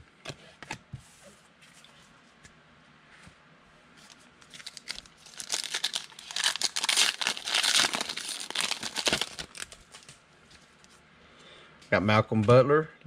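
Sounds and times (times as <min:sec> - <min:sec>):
plastic wrapper tearing and crinkling: 0:04.4 - 0:10.1.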